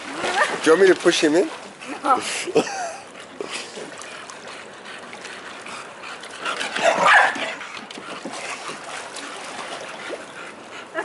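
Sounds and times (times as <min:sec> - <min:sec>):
bulldog yapping and whining: 0:06.8 - 0:07.6.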